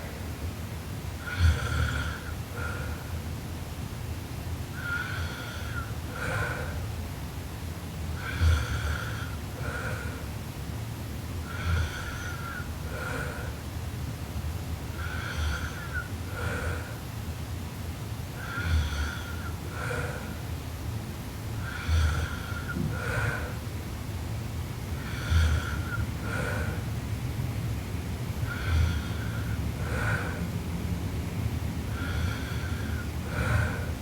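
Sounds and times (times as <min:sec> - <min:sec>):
woman snoring: 0:01.2 - 0:02.4, 0:08.2 - 0:10.1, 0:11.5 - 0:13.4, 0:15.0 - 0:16.8, 0:21.6 - 0:23.6.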